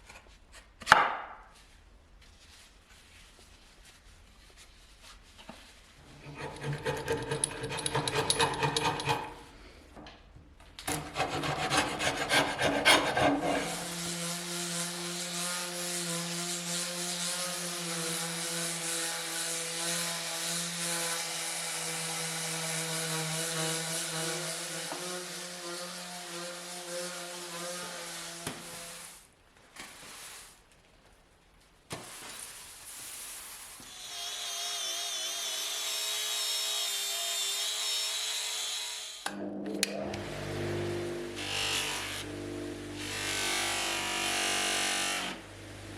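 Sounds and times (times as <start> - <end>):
power tool sanding wood: 6.0 - 9.4, 11.2 - 29.1, 40.2 - 45.9.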